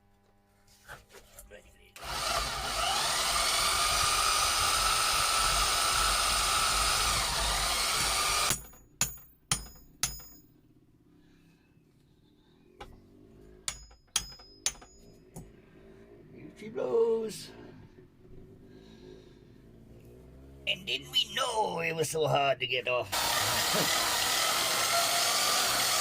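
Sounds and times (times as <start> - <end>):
power tool motor running: 2.0 - 8.8, 23.1 - 26.0
ringing metal knocks: 8.5 - 10.6, 13.6 - 15.6.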